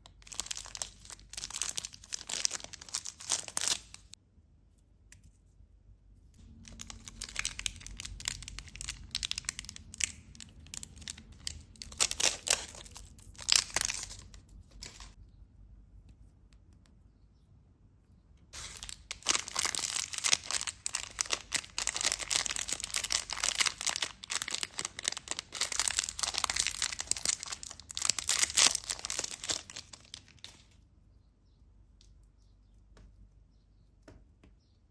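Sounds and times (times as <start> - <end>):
wrappers tearing and crinkling: 0.2 - 4.2, 6.5 - 15.2, 18.6 - 30.7.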